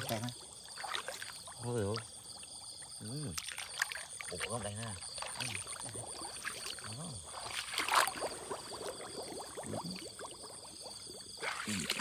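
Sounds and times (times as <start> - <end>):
pond water sloshing and splashing: 0.0 - 12.0.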